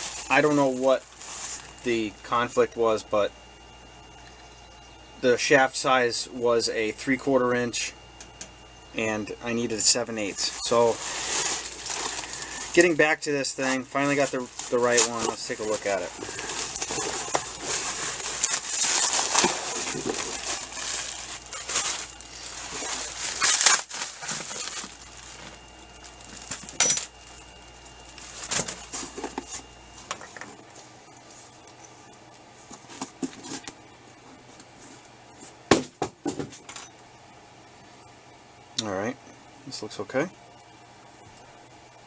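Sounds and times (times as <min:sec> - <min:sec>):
packaging rustling and crinkling: 0:00.0 - 0:02.0, 0:10.2 - 0:33.7.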